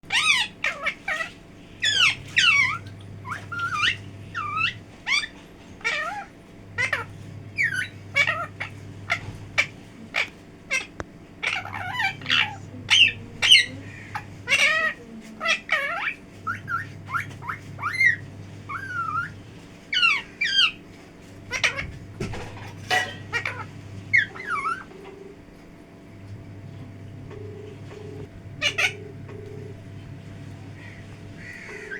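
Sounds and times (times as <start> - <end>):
parrot squawking and whistling: 0.1 - 20.8, 22.9 - 25.0, 28.6 - 29.4.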